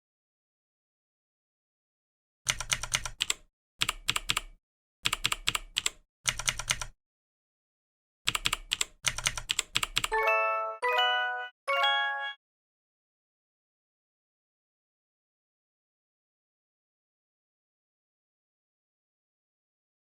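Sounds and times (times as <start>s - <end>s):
keyboard typing: 2.5s - 7.0s, 8.3s - 10.3s
rising chime tones: 10.2s - 12.4s.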